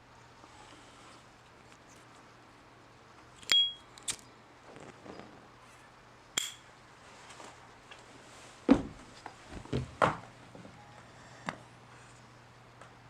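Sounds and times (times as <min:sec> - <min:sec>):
high-pitched ping: 0:03.5 - 0:03.8.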